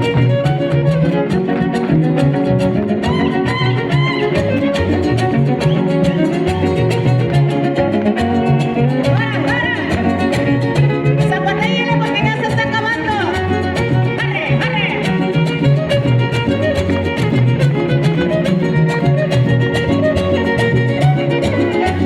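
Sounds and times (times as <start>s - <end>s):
strummed strings and bass: 0.0s - 22.0s
violin melody: 0.0s - 22.0s.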